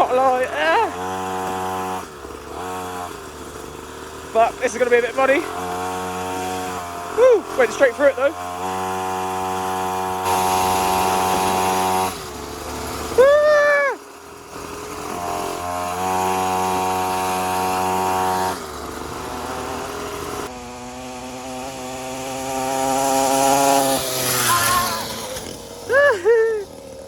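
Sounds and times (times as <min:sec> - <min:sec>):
two-stroke mini moto engine: 0:00.0 - 0:27.0
loud rising-and-falling whoop: 0:13.2 - 0:14.0, 0:24.2 - 0:26.7.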